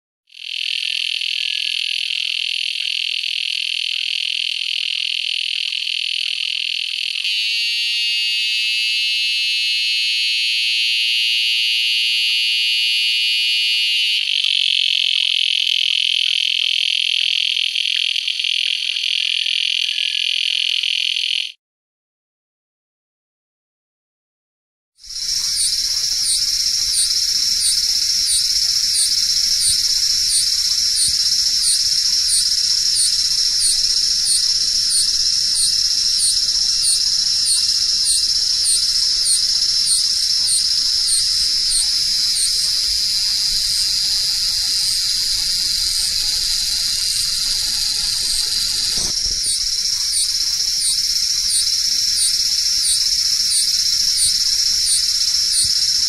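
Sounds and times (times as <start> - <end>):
cicada buzzing: 0.3 - 21.5, 25.0 - 56.0.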